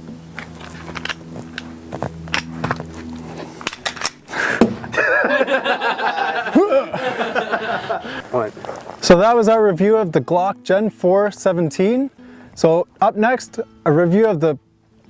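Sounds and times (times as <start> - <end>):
faint steady hum: 0.0 - 9.1
person laughing or vocalising: 4.3 - 8.4.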